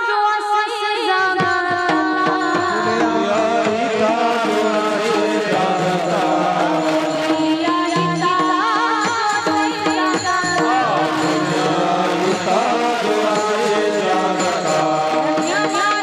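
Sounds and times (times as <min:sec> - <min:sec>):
hand drum strokes: 0:01.6 - 0:16.0
person singing ornamented melody: 0:01.9 - 0:08.4, 0:09.8 - 0:16.0
held accompanying tones: 0:01.9 - 0:16.0.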